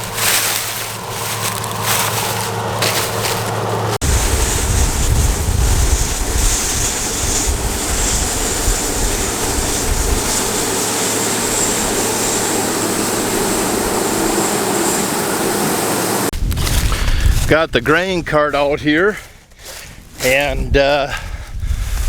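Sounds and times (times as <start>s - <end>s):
harvesting machinery running: 0.0s - 17.5s
wind buffeting microphone: 0.0s - 18.8s, 19.6s - 22.0s.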